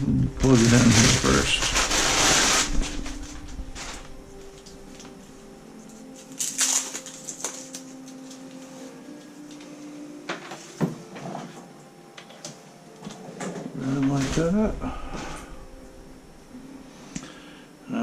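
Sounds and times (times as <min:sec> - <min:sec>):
faint steady hum: 0:00.0 - 0:18.0
rustling: 0:00.2 - 0:09.7.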